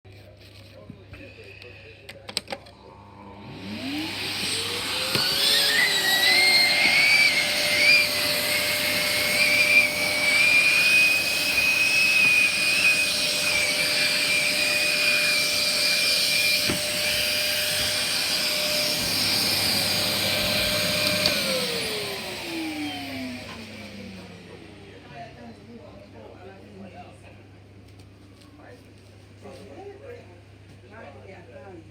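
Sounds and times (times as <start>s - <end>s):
motor whine: 3.0s - 24.5s.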